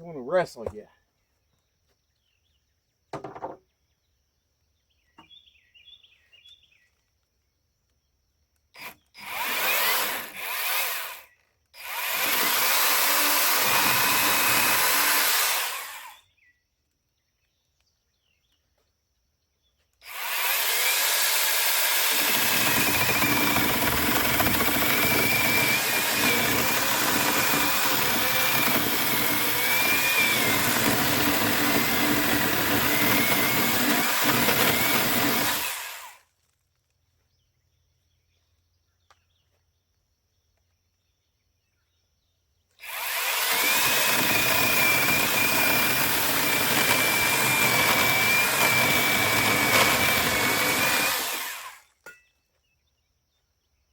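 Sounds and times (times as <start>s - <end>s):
angle grinder grinding wood: 8.8s - 16.2s, 20.0s - 36.6s, 42.8s - 51.9s.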